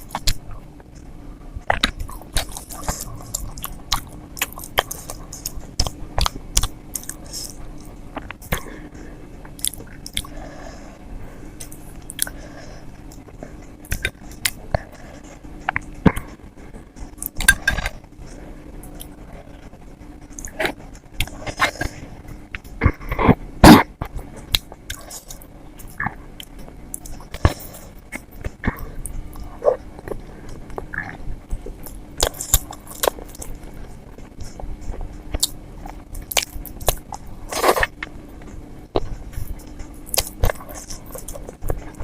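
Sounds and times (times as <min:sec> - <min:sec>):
faint steady hum: 0:00.0 - 0:42.0
wet chewing and smacking: 0:01.7 - 0:08.7, 0:09.4 - 0:10.4, 0:23.8 - 0:42.0.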